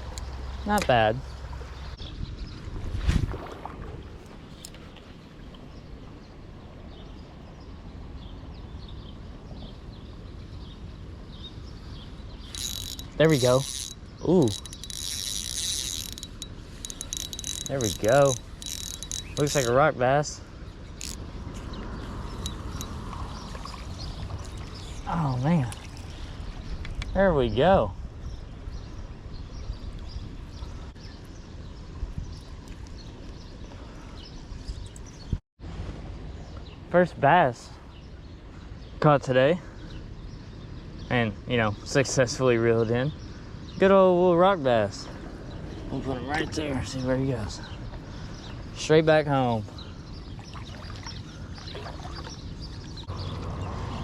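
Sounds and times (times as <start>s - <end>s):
low outdoor background noise: 4.5s - 54.0s
faint ticks: 12.5s - 19.7s
fishing reel cranking: 12.5s - 19.7s, 21.0s - 21.2s.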